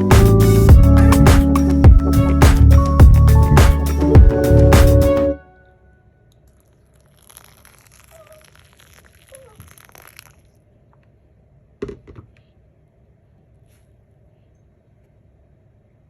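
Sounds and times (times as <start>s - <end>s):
faint rustling and crinkling: 13.4s - 15.2s.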